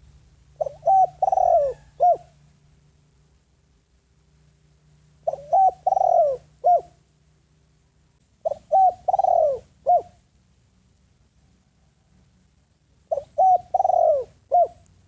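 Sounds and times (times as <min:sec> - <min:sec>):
dove cooing: 0:00.0 - 0:02.4, 0:05.2 - 0:07.0, 0:08.4 - 0:10.2, 0:13.1 - 0:14.8.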